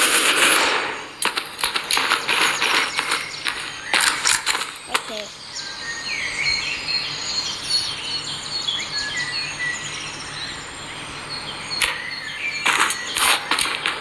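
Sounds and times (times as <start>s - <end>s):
birds chirping: 0.0s - 14.0s
short bursts of noise: 11.8s - 14.0s.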